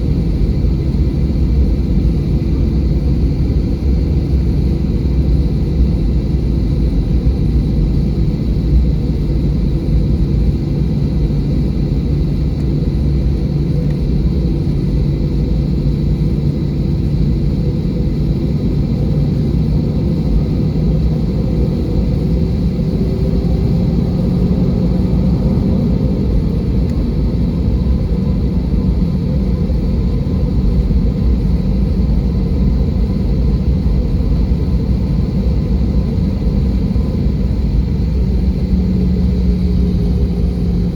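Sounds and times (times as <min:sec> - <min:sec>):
airplane cabin engine rumble: 0:00.0 - 0:40.9.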